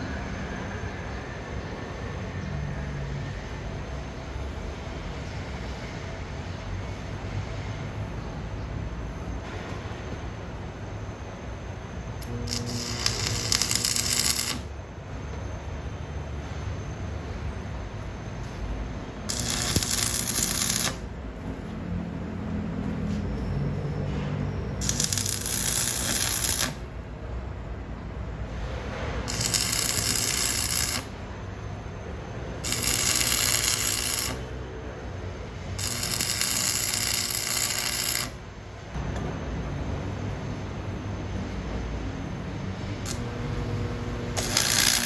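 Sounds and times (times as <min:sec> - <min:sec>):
shop machine noise: 0:00.0 - 0:45.0
arc welding crackling hiss: 0:12.2 - 0:14.8, 0:18.4 - 0:21.2, 0:24.8 - 0:26.9, 0:29.2 - 0:31.3, 0:32.6 - 0:34.6, 0:35.8 - 0:38.4, 0:43.1 - 0:45.0.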